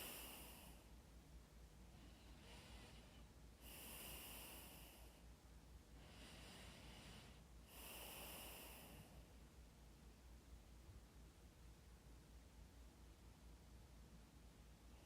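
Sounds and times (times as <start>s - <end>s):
slow breathing: 0.0s - 1.0s, 1.8s - 5.3s, 5.9s - 9.4s.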